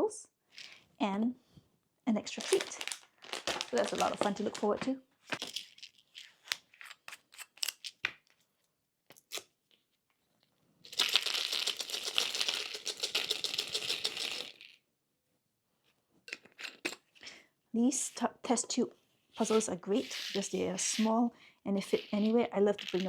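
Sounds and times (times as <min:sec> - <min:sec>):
puzzle pieces rattling out: 0:02.4 - 0:06.3, 0:10.9 - 0:14.8, 0:19.4 - 0:21.1, 0:21.8 - 0:23.0.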